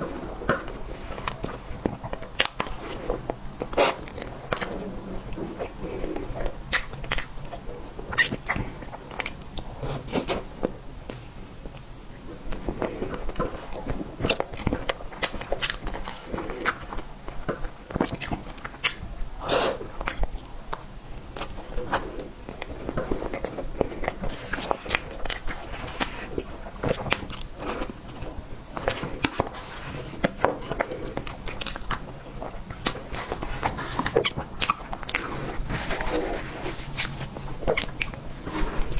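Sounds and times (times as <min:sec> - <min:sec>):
biting and chewing: 0:30.2 - 0:38.9
rustling noise: 0:32.4 - 0:38.9
chewing and biting clicks: 0:32.7 - 0:35.6.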